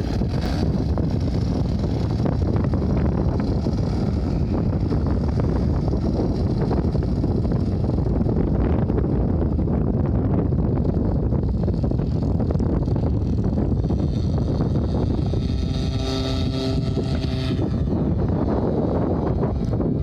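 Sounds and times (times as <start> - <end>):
distant model aircraft engine drone: 0.0 - 20.0
wind buffeting microphone: 0.0 - 20.0.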